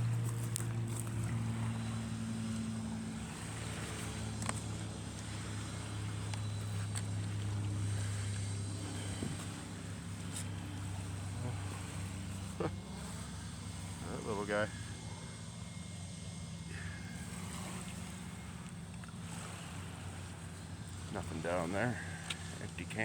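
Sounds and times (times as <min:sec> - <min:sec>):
motor humming: 0:00.0 - 0:23.0
faint clicks: 0:00.2 - 0:01.4, 0:04.0 - 0:05.3, 0:22.1 - 0:23.0.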